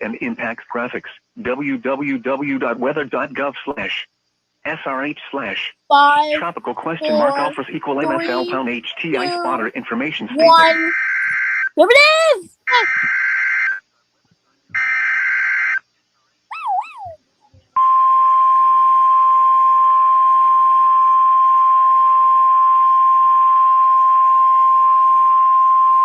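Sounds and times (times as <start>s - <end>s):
wavering cry: 7.0s - 13.1s, 16.5s - 17.2s.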